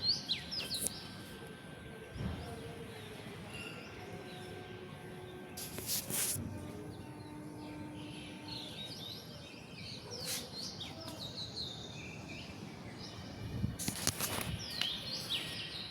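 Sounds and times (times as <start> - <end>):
small birds chirping: 7.2 - 15.9.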